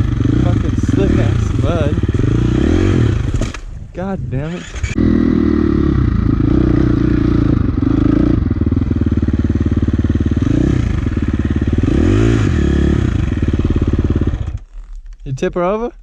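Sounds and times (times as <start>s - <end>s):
dirt bike engine running: 0.0s - 3.8s, 4.4s - 14.8s.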